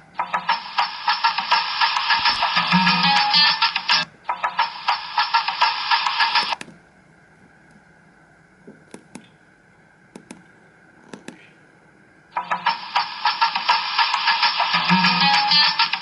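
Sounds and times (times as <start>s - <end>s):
faint steady whine: 0.0s - 16.0s
phone ringtone melody: 0.2s - 6.5s, 14.7s - 16.0s.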